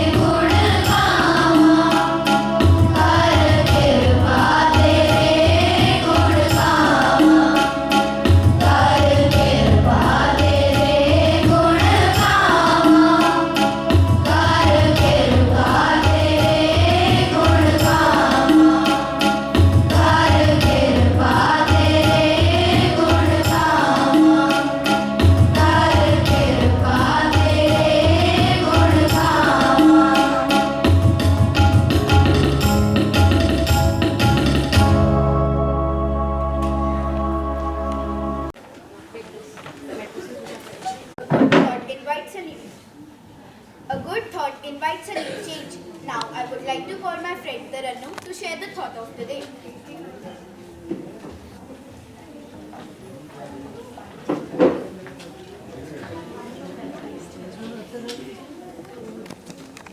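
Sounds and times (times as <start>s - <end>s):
person singing devotional song: 0.0s - 32.1s, 35.0s - 38.6s
tabla drum pattern: 0.0s - 35.1s.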